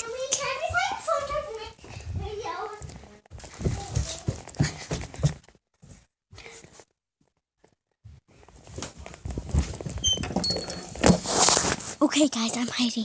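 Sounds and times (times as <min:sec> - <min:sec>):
footsteps: 0:00.0 - 0:06.9, 0:07.6 - 0:13.0
rustling handling noise: 0:08.3 - 0:13.0.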